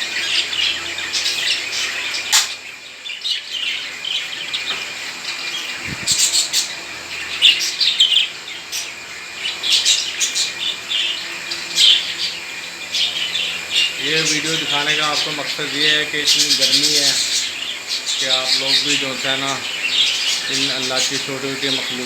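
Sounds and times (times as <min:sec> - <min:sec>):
parrots chirping and chattering: 0:00.0 - 0:22.0
sharp click: 0:02.3 - 0:02.6.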